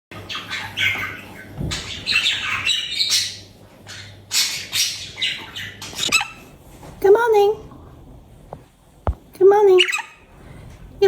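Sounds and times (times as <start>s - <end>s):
budgerigars squawking: 0.2s - 6.5s.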